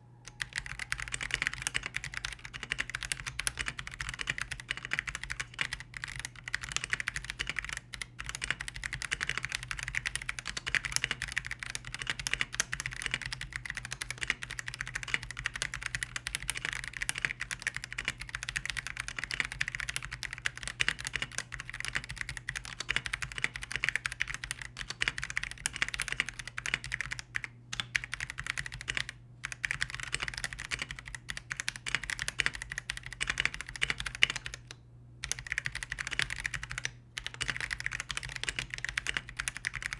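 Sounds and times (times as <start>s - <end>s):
mechanical keyboard typing: 0.3s - 39.9s.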